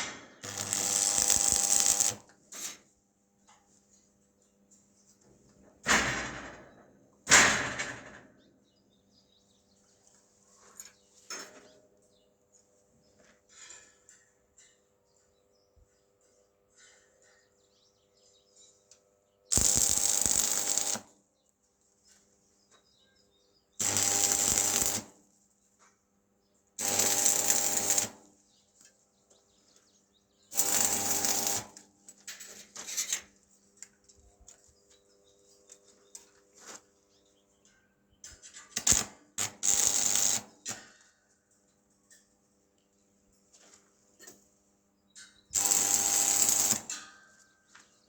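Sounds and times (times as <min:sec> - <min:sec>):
power tool on metal: 0:00.4 - 0:02.2, 0:19.5 - 0:21.1, 0:23.8 - 0:25.2, 0:26.8 - 0:28.2, 0:30.5 - 0:31.8, 0:38.8 - 0:40.5, 0:45.6 - 0:47.0.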